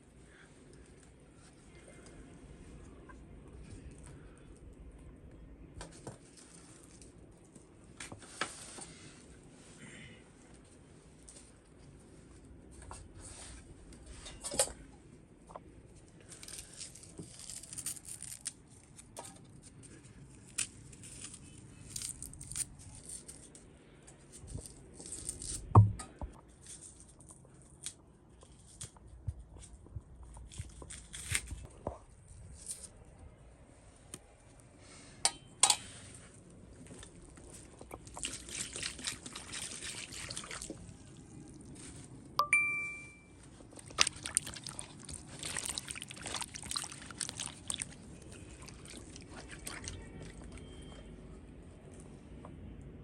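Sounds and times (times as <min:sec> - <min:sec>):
food packaging rustling and tearing: 0:16.2 - 0:23.6, 0:30.2 - 0:33.1, 0:43.6 - 0:51.0.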